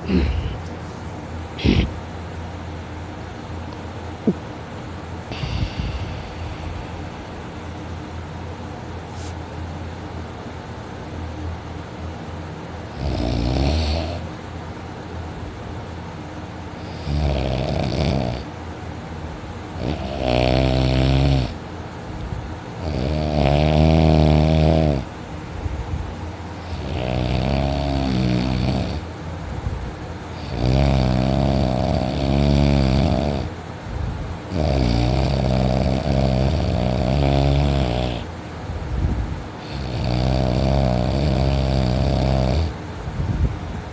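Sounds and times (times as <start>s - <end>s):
person snoring loudly: 0.0s - 0.6s, 1.6s - 1.9s, 5.3s - 7.2s, 13.0s - 14.2s, 16.8s - 18.4s, 19.8s - 21.6s, 22.8s - 25.1s, 26.6s - 29.0s, 30.4s - 33.5s, 34.5s - 38.3s, 39.6s - 42.7s
quiet breathing: 5.3s - 7.8s.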